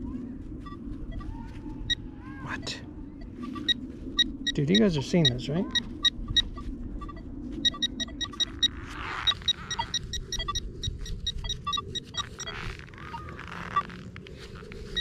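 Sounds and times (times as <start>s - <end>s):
rapid short electronic beeps: 3.4s - 13.9s.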